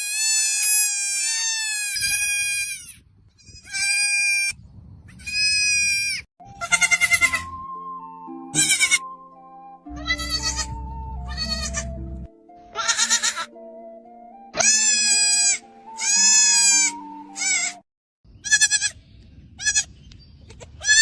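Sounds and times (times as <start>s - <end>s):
goat kid bleating: 0.0s - 4.5s, 5.2s - 7.5s, 8.5s - 9.1s, 10.0s - 12.0s, 12.7s - 13.5s, 14.6s - 17.8s, 18.4s - 19.0s, 19.6s - 19.9s, 20.5s - 21.0s
background music: 6.4s - 17.8s.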